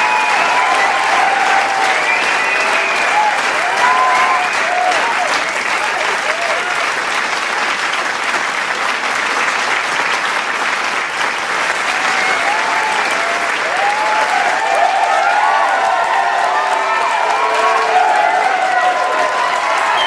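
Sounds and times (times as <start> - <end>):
crowd cheering and shouting: 0.0 - 7.1, 11.7 - 20.0
crowd applauding: 0.0 - 20.0.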